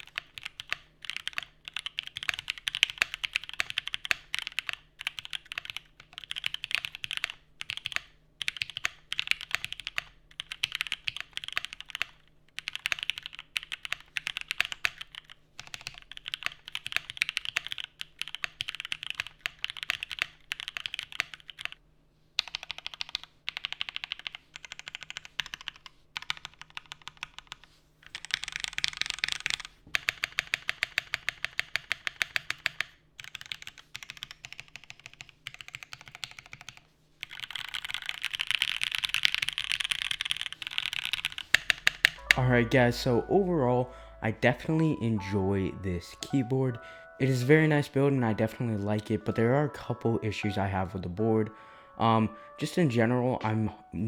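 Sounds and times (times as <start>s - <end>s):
mechanical keyboard typing clacks: 0.0s - 21.8s, 22.4s - 42.6s.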